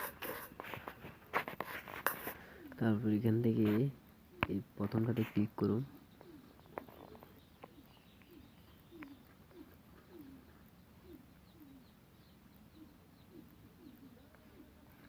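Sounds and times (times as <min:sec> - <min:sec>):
bird calling low falling notes: 0:05.8 - 0:15.0.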